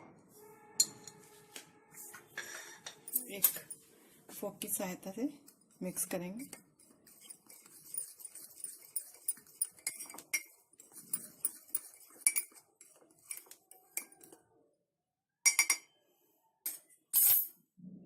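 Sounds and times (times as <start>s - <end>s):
fork clinking against mug: 6.5s - 14.4s.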